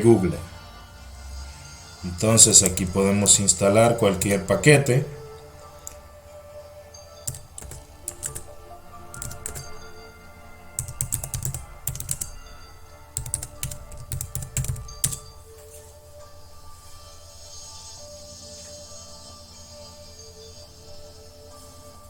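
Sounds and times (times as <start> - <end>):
quiet background music: 0.0 - 22.0
keyboard typing: 2.2 - 5.2, 5.8 - 6.0, 7.3 - 9.9, 10.8 - 12.5, 13.2 - 15.4.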